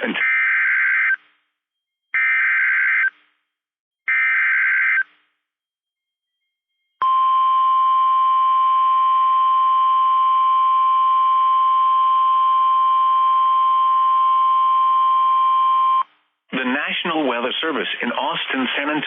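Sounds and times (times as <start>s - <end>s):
steady alarm beep: 6.2s - 16.0s.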